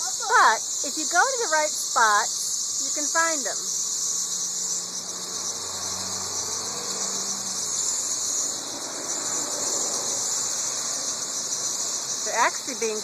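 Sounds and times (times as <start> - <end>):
cicadas droning chorus: 0.0 - 13.0.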